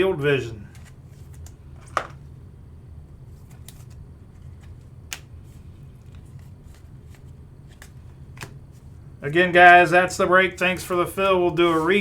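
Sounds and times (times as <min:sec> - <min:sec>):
steady low hum: 0:00.0 - 0:12.0
trading cards clicking and slapping: 0:03.4 - 0:08.6.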